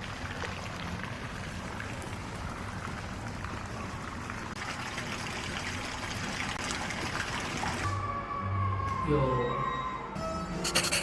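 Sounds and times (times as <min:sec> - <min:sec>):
running water: 0:00.0 - 0:07.9.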